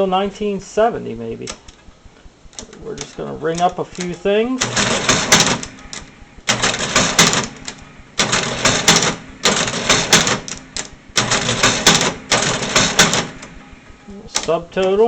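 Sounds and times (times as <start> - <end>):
cash register mechanical clatter: 2.6 - 13.6, 14.3 - 15.0.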